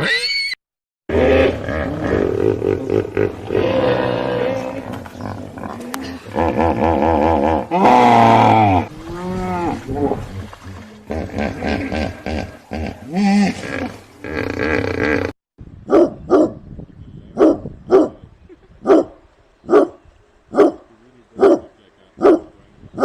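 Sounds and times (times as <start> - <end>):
dog barking: 15.9 - 16.6, 17.4 - 18.2, 18.9 - 22.5.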